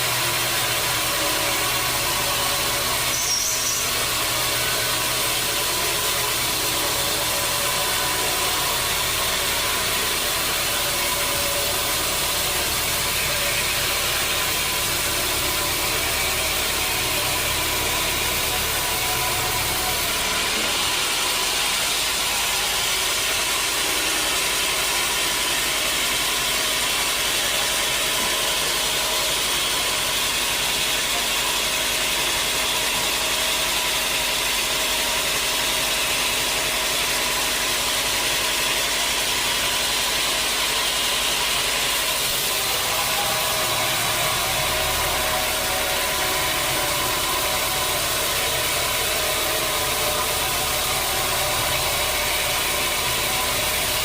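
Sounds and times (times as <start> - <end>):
sawmill machinery drone: 0.0 - 54.0.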